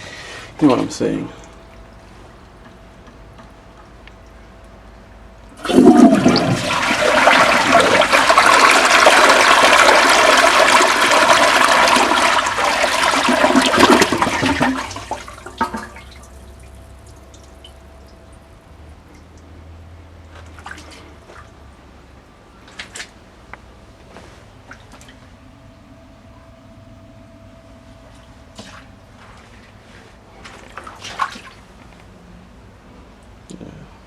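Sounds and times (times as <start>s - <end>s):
toilet flushing: 5.5s - 17.8s.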